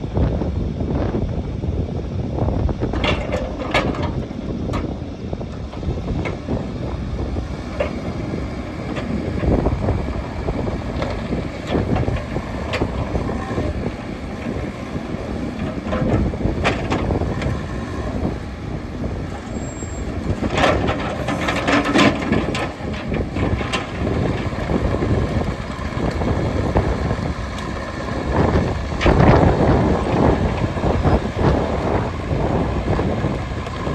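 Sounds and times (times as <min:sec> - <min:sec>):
excavator diesel engine running: 0:00.0 - 0:33.9.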